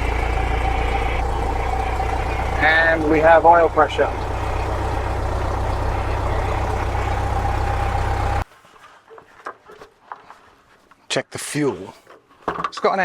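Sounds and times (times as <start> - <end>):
aircraft engine idling: 0.0 - 8.4.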